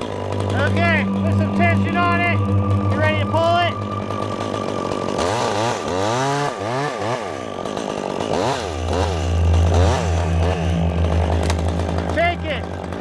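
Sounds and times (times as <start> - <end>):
chainsaw revving: 4.4 - 13.0.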